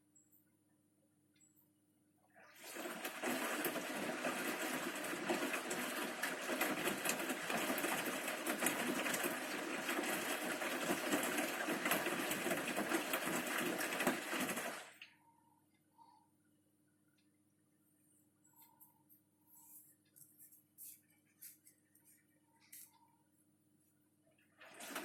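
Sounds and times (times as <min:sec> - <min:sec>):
washing machine water churning: 0:02.4 - 0:15.0, 0:24.3 - 0:25.0.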